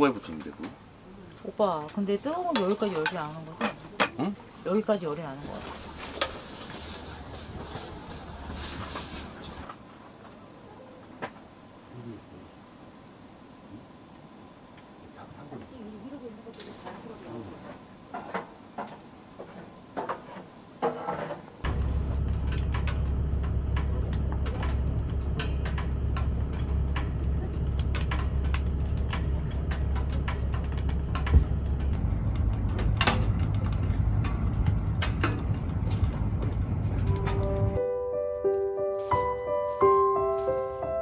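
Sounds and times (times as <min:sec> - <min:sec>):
fire crackling and popping: 0:21.6 - 0:37.8
stove low rumble: 0:21.6 - 0:37.8.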